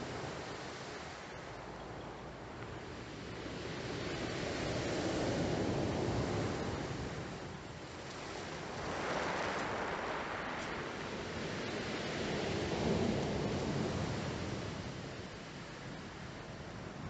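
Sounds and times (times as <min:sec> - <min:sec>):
sea surf waves: 0:02.9 - 0:15.6.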